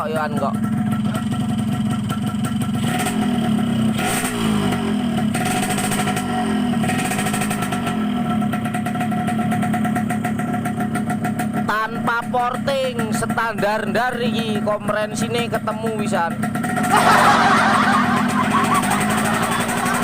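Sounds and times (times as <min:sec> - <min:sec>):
two-stroke motorcycle engine revving: 0:00.0 - 0:20.0.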